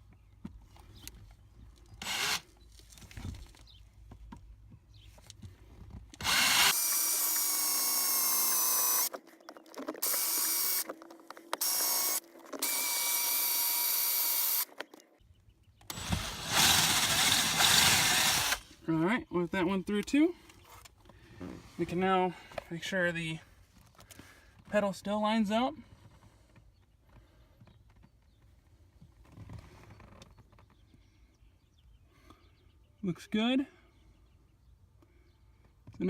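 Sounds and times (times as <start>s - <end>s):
electric drill boring through metal: 2.0s - 2.4s, 6.2s - 9.1s, 10.0s - 10.9s, 11.6s - 14.7s, 15.9s - 18.6s.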